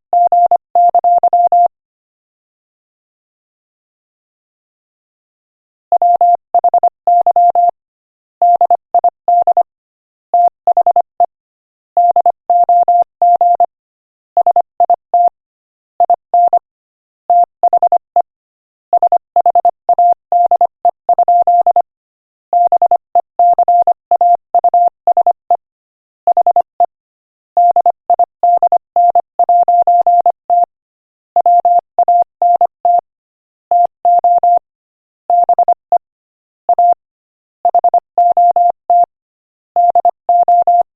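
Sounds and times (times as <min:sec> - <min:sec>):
morse code beeps: 0:00.2 - 0:01.7, 0:06.0 - 0:07.8, 0:08.4 - 0:09.7, 0:12.0 - 0:13.7, 0:14.4 - 0:15.3, 0:16.0 - 0:16.7, 0:17.3 - 0:18.3, 0:19.0 - 0:21.9, 0:22.6 - 0:25.6, 0:26.3 - 0:26.9, 0:27.6 - 0:30.7, 0:31.4 - 0:33.0, 0:33.7 - 0:34.6, 0:35.3 - 0:36.0, 0:36.7 - 0:37.0, 0:37.6 - 0:39.1, 0:39.8 - 0:40.9.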